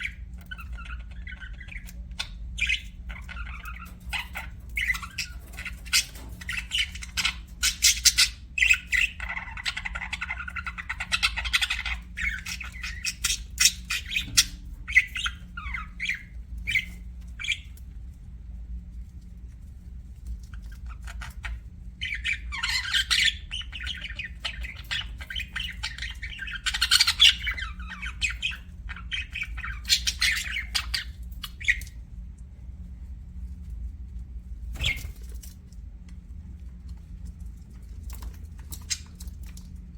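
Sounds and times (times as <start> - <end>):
budgerigars chirping: 0.0 - 17.8, 20.5 - 32.0, 34.8 - 35.2
low steady hum: 0.0 - 39.9.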